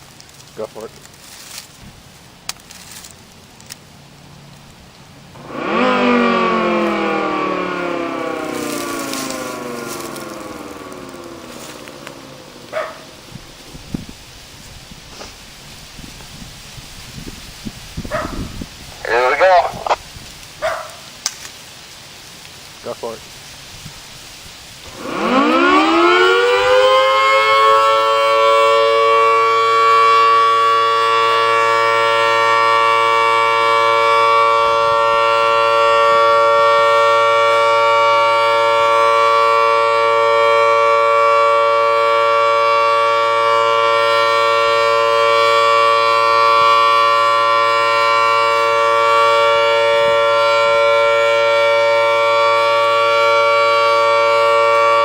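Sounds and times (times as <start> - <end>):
two-tone warning siren: 5.3 - 14.7, 16.0 - 20.0, 24.8 - 55.0.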